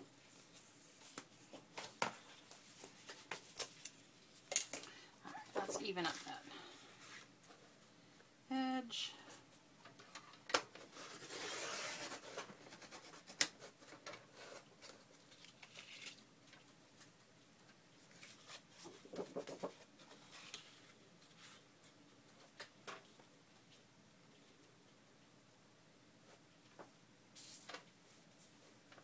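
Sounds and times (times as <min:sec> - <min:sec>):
paper rustling and sliding: 0:10.8 - 0:16.2.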